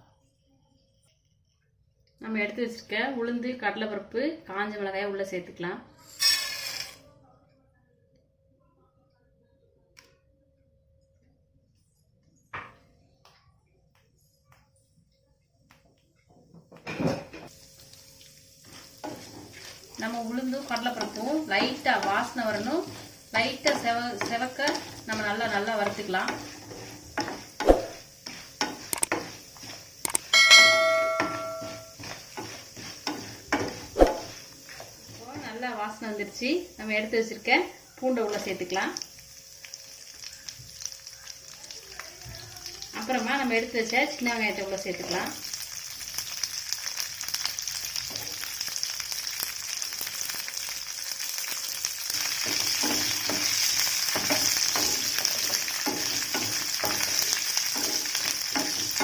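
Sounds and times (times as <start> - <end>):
food sizzling in oil: 17.5 - 59.0
spoon scraping metal pan: 18.7 - 19.9, 20.8 - 34.9
sharp ringing metal strike: 30.3 - 32.0.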